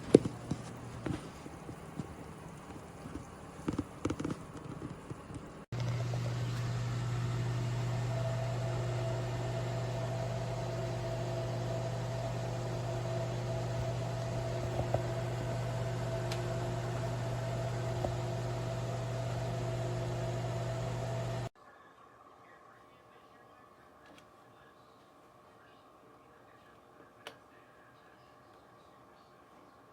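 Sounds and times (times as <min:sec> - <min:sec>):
air fryer fan humming: 0:00.0 - 0:21.5.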